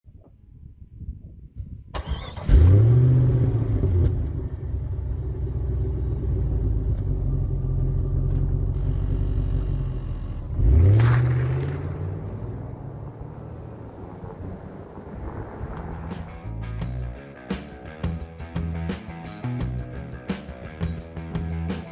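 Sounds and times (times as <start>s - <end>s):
car engine starting and revving: 2.0s - 16.6s.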